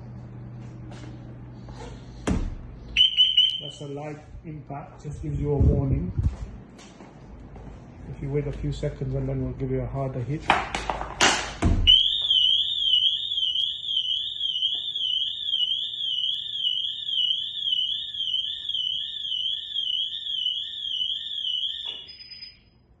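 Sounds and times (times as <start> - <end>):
car alarm siren warbling: 2.9 - 4.0, 11.8 - 22.9.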